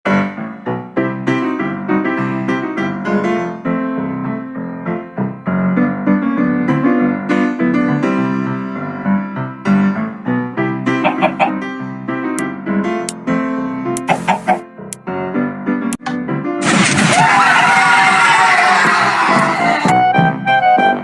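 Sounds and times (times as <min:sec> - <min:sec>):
piano music: 0:00.1 - 0:16.6.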